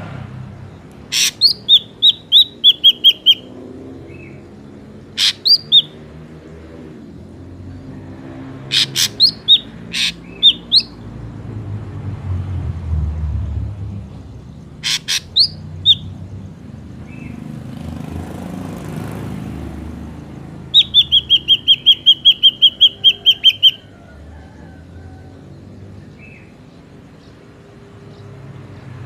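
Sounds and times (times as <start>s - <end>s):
bird calls: 0.6s - 6.9s, 7.6s - 11.1s, 14.1s - 17.6s, 20.4s - 28.4s.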